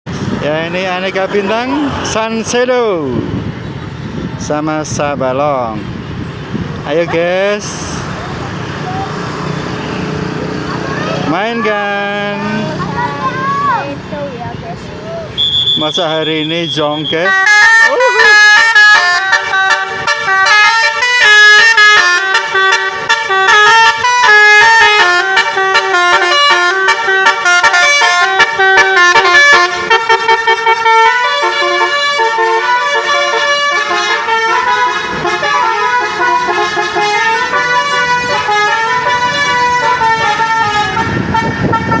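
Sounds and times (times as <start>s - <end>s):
multi-tone musical bus horn: 15.4s - 42.0s.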